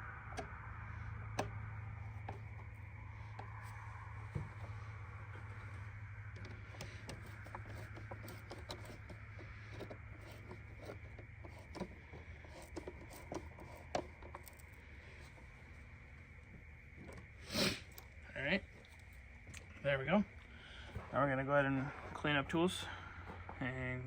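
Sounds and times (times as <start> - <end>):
low steady hum: 0.0 - 24.0
hand tool clicks and scrapes: 6.3 - 15.4.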